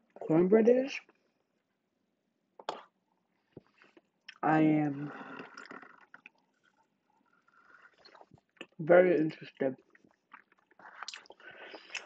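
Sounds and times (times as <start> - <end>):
soft mouth clicks: 2.6 - 3.0, 10.3 - 12.0
quiet chewing: 5.2 - 8.8, 9.8 - 12.0.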